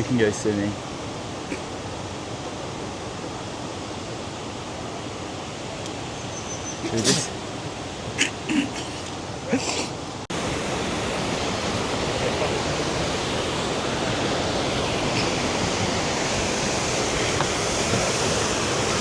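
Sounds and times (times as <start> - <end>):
fast-flowing water rushing: 6.8 - 19.0.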